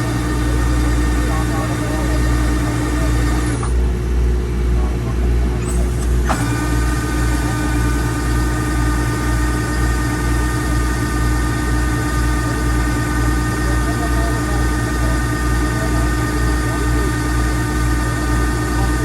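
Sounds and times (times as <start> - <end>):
combine harvester engine throbbing: 0.0 - 19.0
high whining machine tones: 5.5 - 19.0.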